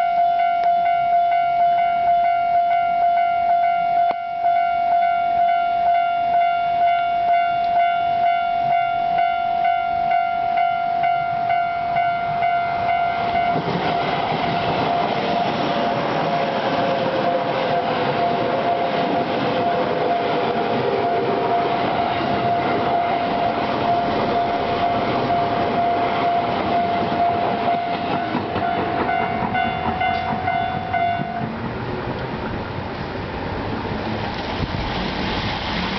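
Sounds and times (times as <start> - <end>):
level crossing alarm ringing: 0.0 - 31.4
train rumble and wheel rattle: 7.0 - 35.9
falling whine: 12.2 - 35.9.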